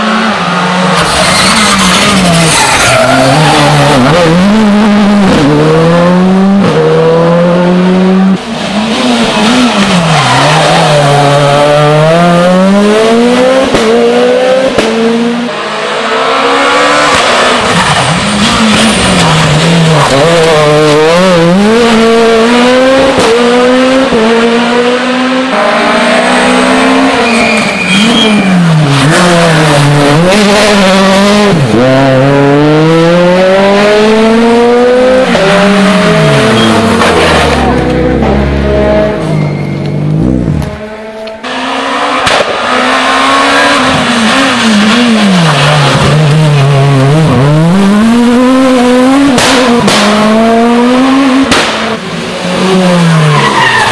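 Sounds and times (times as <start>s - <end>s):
rally car engines revving: 0.0s - 53.9s
tyre squeal: 0.9s - 4.2s, 27.1s - 29.8s, 36.4s - 37.0s, 39.1s - 40.1s, 53.1s - 53.9s.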